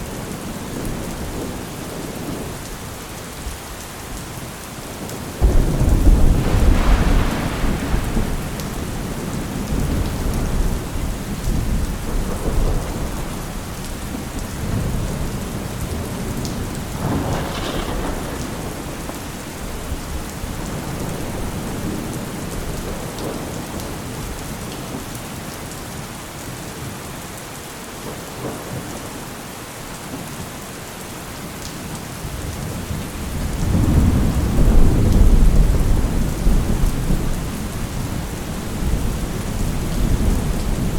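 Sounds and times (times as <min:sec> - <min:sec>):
steady rain: 0:00.0 - 0:40.9
thunder rumbling: 0:05.0 - 0:24.4, 0:32.3 - 0:40.9
sharp thunderclap: 0:05.4 - 0:22.1, 0:33.3 - 0:40.9.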